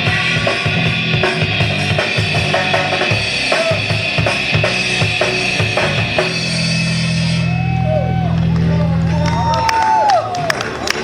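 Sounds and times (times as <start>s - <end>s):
loud music with drum beat: 0.0s - 7.5s.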